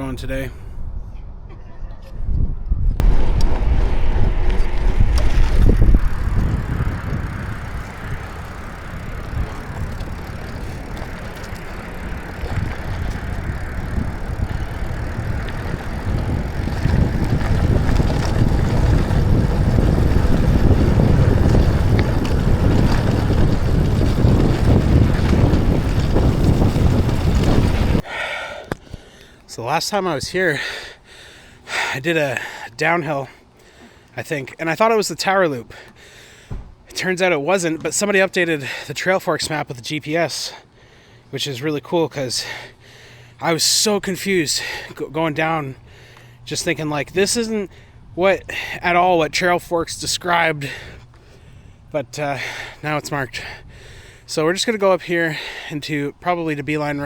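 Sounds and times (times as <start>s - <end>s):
wind on microphone: 0.6s - 28.0s
bike tyre noise and rattle: 2.9s - 29.1s, 42.3s - 57.0s.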